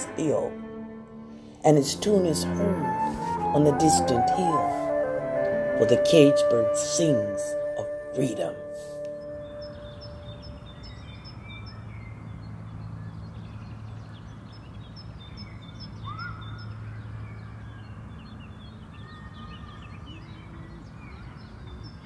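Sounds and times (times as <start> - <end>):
small birds chirping: 8.2 - 22.0
loud rising bird call: 16.0 - 16.7.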